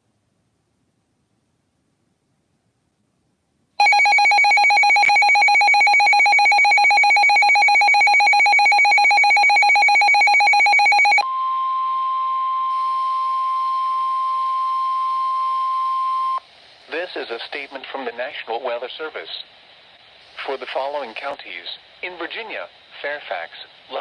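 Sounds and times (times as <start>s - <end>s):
pulsing electronic alarm beep: 3.8s - 11.2s
steady warning tone: 3.8s - 16.4s.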